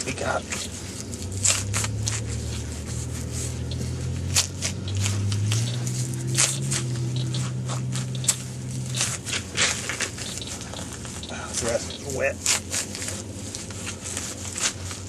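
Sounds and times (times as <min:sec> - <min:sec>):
handling clicks and scrapes: 0:00.0 - 0:15.0
metal detector tone: 0:03.5 - 0:09.2, 0:10.0 - 0:12.3.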